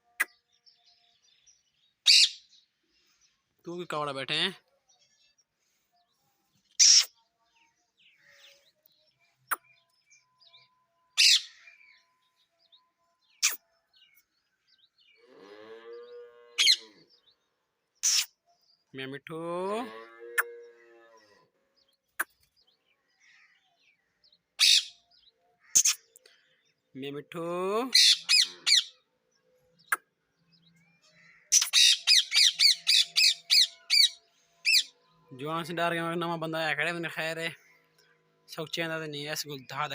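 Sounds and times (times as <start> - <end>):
parrots screeching: 2.1 - 2.4, 11.2 - 11.7, 16.6 - 16.8, 24.6 - 25.0, 25.6 - 26.0, 27.9 - 29.0, 31.2 - 35.0
voice-like parrot call: 16.6 - 16.9.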